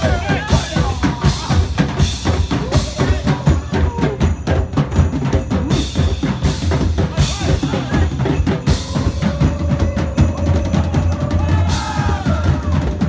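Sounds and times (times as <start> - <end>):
loud music with heavy drum beat: 0.0 - 13.0.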